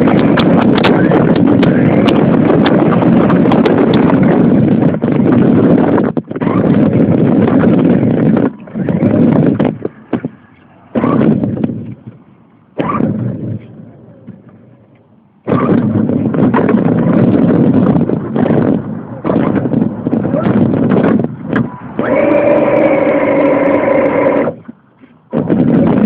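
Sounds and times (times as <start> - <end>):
wind on microphone: 0.0 - 26.0
toy car rumbling and rattling: 22.0 - 24.6.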